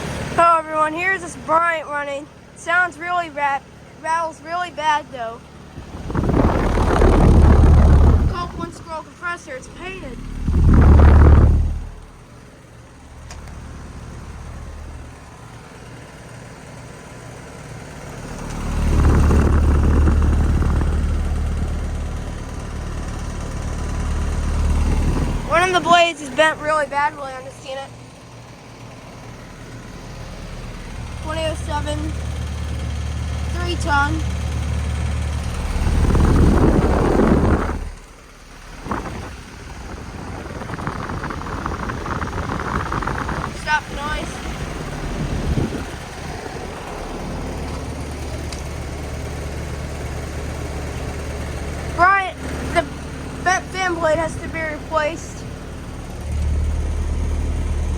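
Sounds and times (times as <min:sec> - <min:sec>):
air conditioner humming: 0:00.0 - 0:38.8
fan blade rattling: 0:00.0 - 0:57.9.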